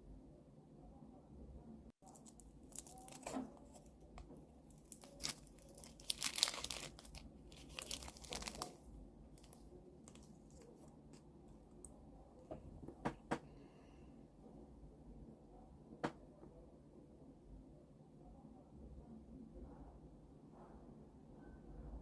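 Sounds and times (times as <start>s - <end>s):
packaging tearing and crinkling: 2.0s - 3.9s, 4.7s - 8.8s.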